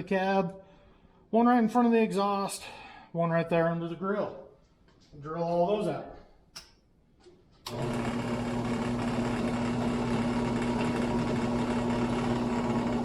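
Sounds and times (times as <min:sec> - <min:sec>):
electric drill running: 0:07.7 - 0:13.0.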